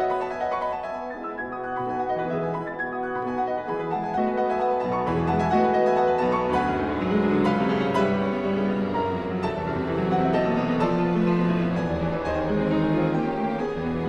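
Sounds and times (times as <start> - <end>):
classical piano piece: 0.0 - 14.0.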